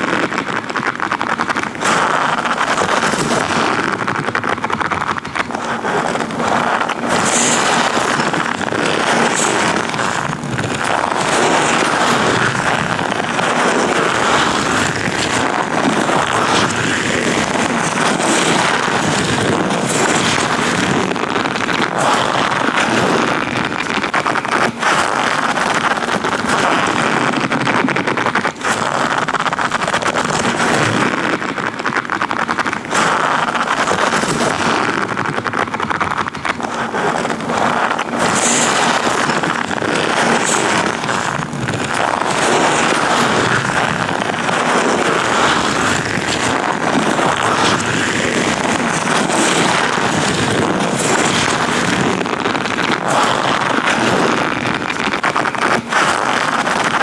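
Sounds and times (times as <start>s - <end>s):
latex gloves rustling: 2.0s - 26.3s, 36.2s - 57.0s.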